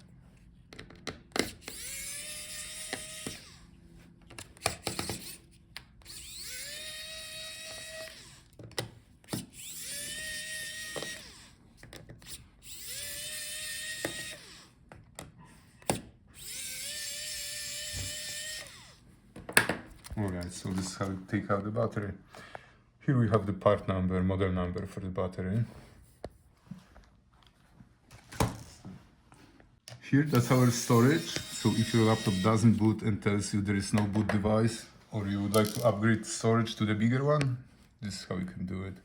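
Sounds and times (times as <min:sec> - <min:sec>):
electric screwdriver whine: 0:01.4 - 0:03.8, 0:04.4 - 0:08.6, 0:09.3 - 0:11.6, 0:12.2 - 0:14.8, 0:15.9 - 0:19.0, 0:30.3 - 0:32.9.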